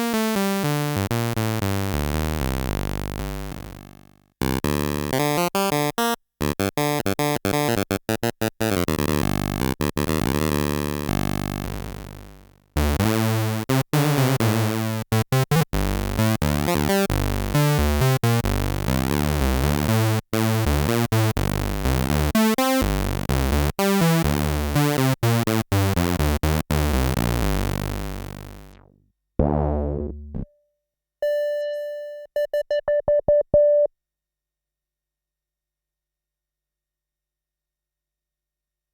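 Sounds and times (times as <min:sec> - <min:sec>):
repeated tone blips: 0:31.2 - 0:33.9.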